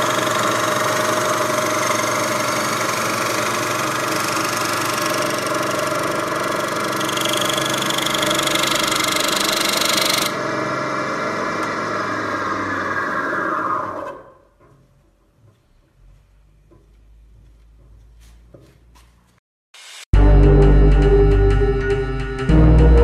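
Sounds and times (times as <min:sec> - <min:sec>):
high cutting noise: 0:00.0 - 0:10.4
lathe running: 0:00.0 - 0:14.2.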